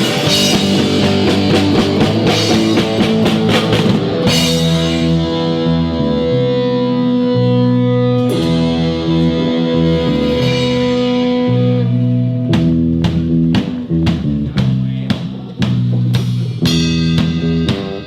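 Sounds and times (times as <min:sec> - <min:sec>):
steady drum beat: 0:00.0 - 0:06.8, 0:08.2 - 0:18.0
bass guitar: 0:00.0 - 0:18.0
guitar chords: 0:00.0 - 0:18.0.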